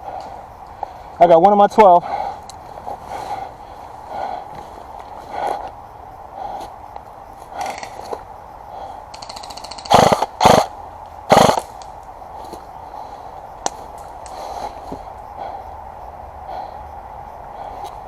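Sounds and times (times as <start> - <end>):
airsoft guns firing: 9.2 - 10.7, 11.3 - 11.7
full-auto bursts: 9.2 - 10.7, 11.3 - 11.7.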